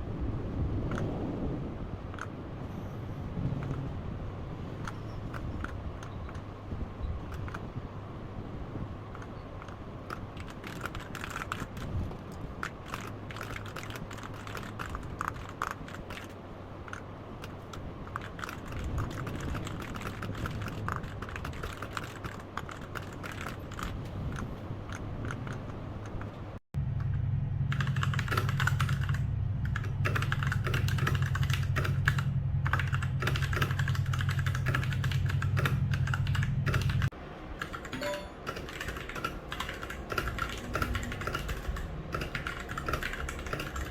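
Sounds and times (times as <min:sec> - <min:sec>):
mechanical keyboard typing: 0:09.2 - 0:16.3, 0:17.7 - 0:24.0, 0:27.7 - 0:43.9.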